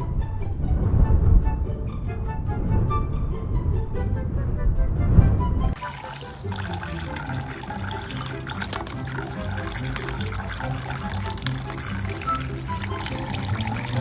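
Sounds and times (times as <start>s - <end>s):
running water splashing: 5.8s - 14.0s.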